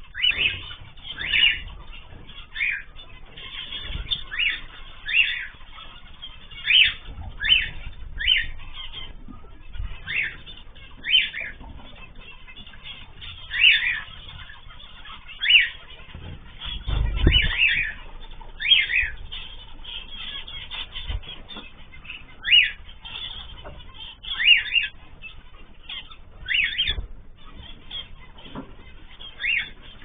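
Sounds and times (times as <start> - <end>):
cage birds short sharp calls: 0.0 - 30.0.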